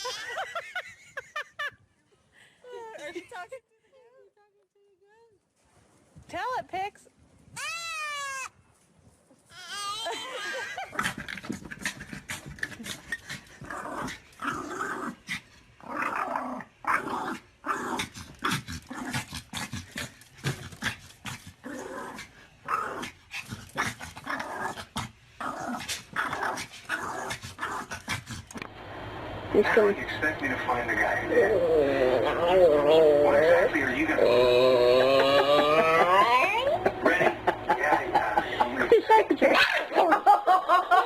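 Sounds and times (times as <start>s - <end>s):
dog growling: 31.4s - 36.3s.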